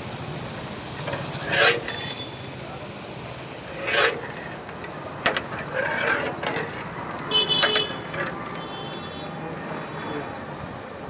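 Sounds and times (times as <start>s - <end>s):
street traffic: 0.0s - 11.0s
vehicle horn toot: 7.3s - 9.4s.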